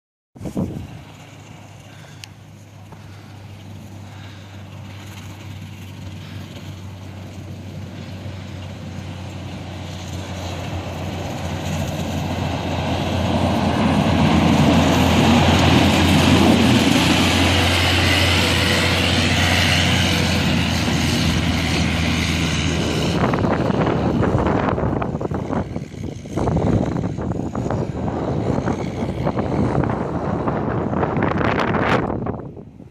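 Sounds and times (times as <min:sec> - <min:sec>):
rushing hiss of plowed snow: 0:00.4 - 0:24.2
grader diesel engine: 0:00.4 - 0:32.9.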